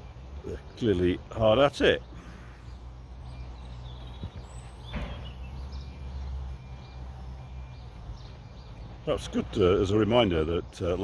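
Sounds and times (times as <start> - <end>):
construction machinery rumbling: 0.0 - 11.0
faint birdsong: 0.0 - 11.0.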